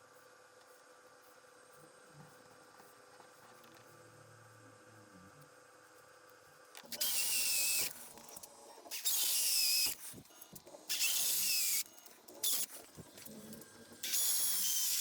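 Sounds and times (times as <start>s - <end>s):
small electric motor whirring: 5.9s - 15.0s.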